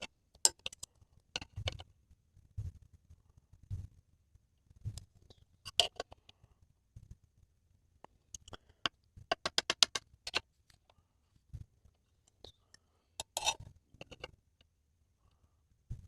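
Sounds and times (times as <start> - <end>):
hard objects clicking: 0.0 - 1.8, 9.3 - 10.4.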